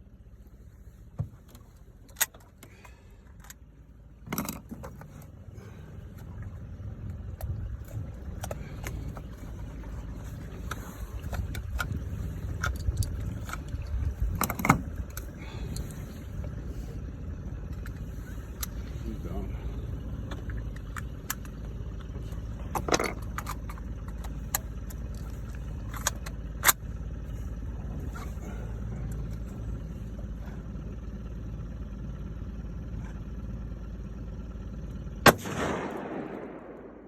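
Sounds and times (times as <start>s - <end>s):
low rumble: 2.6s - 37.0s
rifle gunshot with echo: 35.2s - 37.0s.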